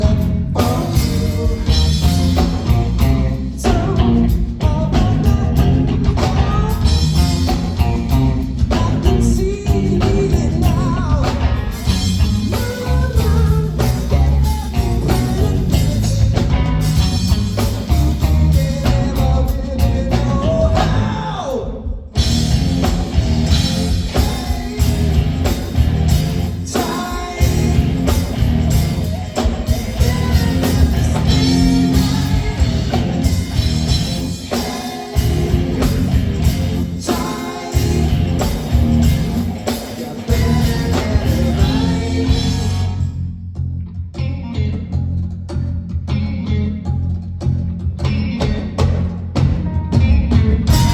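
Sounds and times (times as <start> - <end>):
person singing: 0.0 - 16.6, 23.9 - 25.8, 26.6 - 43.0, 49.6 - 50.9
live rock band: 0.0 - 43.3, 44.2 - 50.9
bass and drum groove: 0.0 - 50.9
guitar: 0.0 - 50.9.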